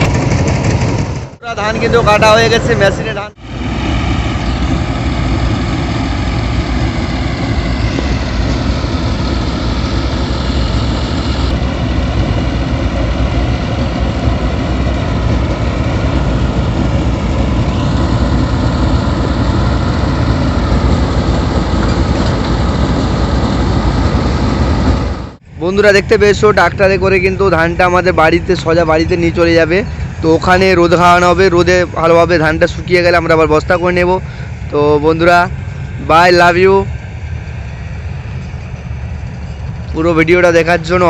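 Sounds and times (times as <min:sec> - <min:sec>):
diesel engine running: 0:00.0 - 0:41.0.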